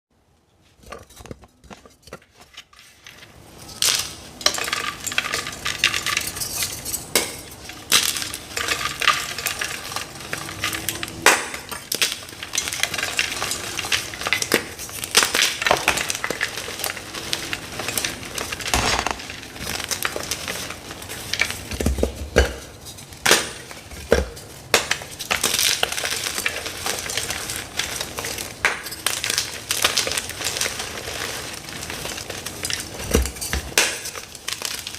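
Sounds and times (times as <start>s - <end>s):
chalk blocks crunching and snapping: 18.6s - 34.9s.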